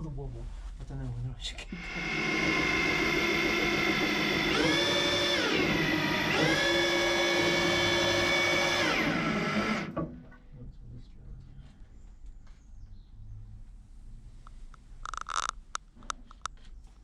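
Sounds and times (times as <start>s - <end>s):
electric drill drilling into wood: 1.7s - 10.1s.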